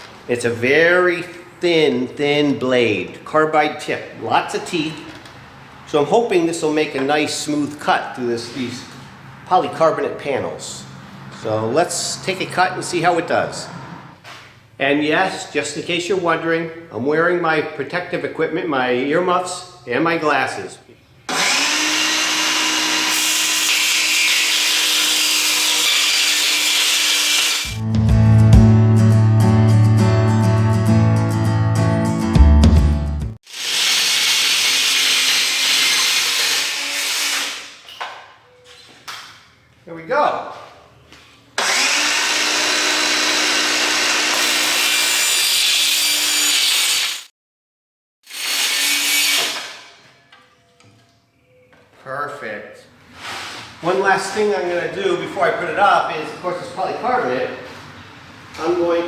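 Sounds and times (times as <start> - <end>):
circular saw cutting plastic: 21.3 - 27.8, 33.5 - 37.8, 41.6 - 47.3.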